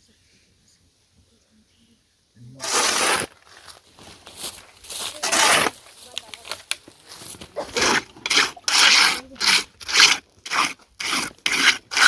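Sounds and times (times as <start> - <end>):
hand tool scraping rough surface: 2.6 - 12.0.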